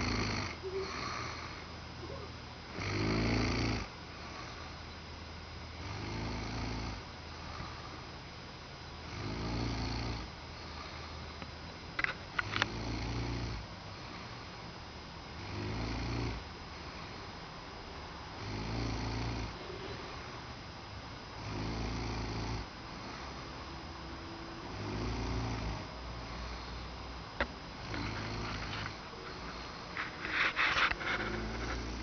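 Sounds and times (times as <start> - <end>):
person snoring: 0.0 - 4.6, 5.8 - 7.8, 9.1 - 11.0, 12.6 - 13.6, 15.4 - 17.2, 18.4 - 20.4, 21.4 - 23.5, 24.7 - 26.8, 27.8 - 32.0.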